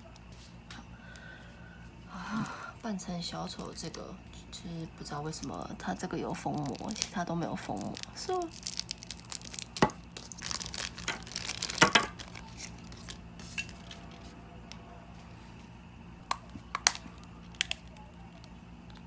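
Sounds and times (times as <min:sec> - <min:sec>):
plastic film crinkling and tearing: 0:03.4 - 0:04.0, 0:04.7 - 0:14.4, 0:16.2 - 0:19.0
small plastic parts clicking: 0:16.3 - 0:19.0.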